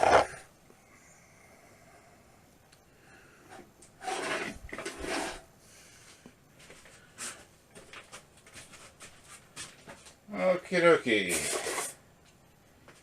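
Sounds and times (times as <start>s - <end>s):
sliding scrape: 0.0s - 0.4s, 3.5s - 5.5s, 11.1s - 12.0s.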